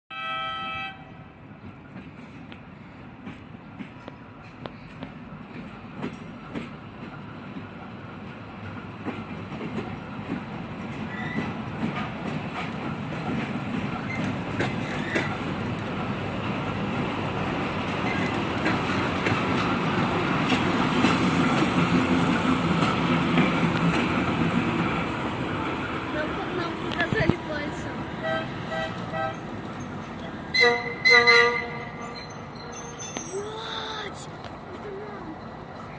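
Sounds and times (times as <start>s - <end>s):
diesel locomotive engine running: 1.3s - 35.9s
wheels clicking over rail joints: 1.6s - 28.0s.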